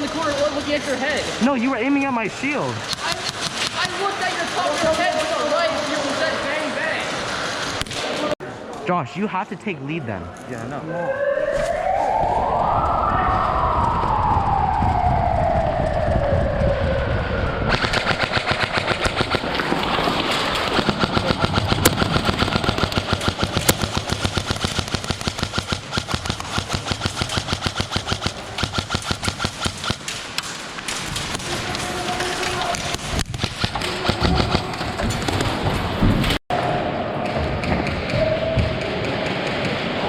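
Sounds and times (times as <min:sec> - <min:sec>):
airsoft guns firing bursts: 0:02.8 - 0:06.2, 0:17.7 - 0:30.4, 0:32.7 - 0:35.6.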